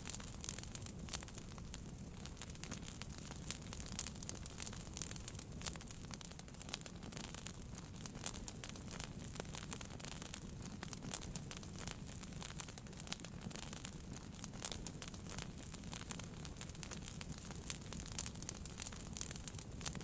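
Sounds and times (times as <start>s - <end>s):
wood fire crackling: 0.0s - 20.0s.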